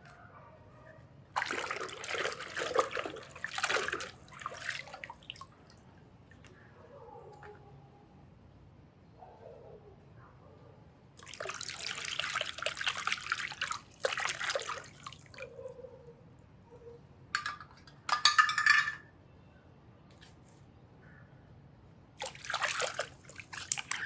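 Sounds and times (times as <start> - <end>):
water splashing and pouring: 1.4 - 5.6, 11.2 - 15.4, 22.2 - 24.0.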